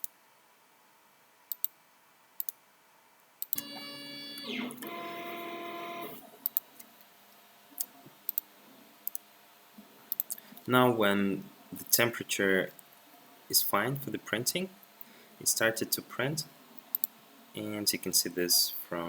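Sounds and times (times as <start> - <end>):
computer mouse clicks: 1.5 - 1.8, 2.4 - 2.6, 7.8 - 9.2, 10.1 - 10.7, 16.8 - 17.1
stepper motors whining: 3.6 - 6.4.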